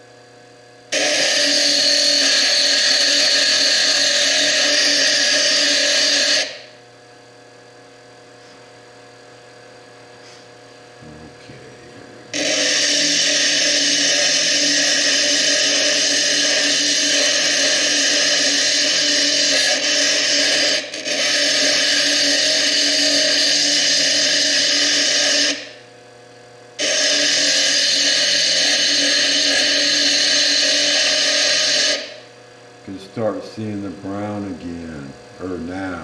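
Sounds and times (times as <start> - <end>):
bench lathe grinding stone: 0.9 - 6.7, 12.4 - 25.8, 26.8 - 32.3.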